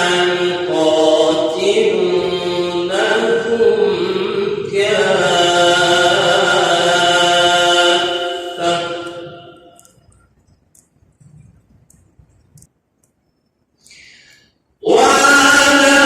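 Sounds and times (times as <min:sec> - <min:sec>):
man reciting melodically: 0:00.0 - 0:09.8, 0:14.8 - 0:16.0.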